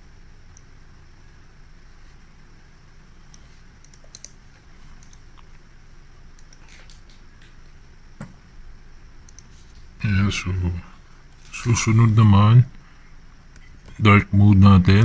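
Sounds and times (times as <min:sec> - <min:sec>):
low steady hum: 0:00.0 - 0:15.0
keyboard and mouse clicks: 0:03.3 - 0:04.4, 0:05.0 - 0:05.5, 0:06.4 - 0:07.6, 0:09.2 - 0:09.9.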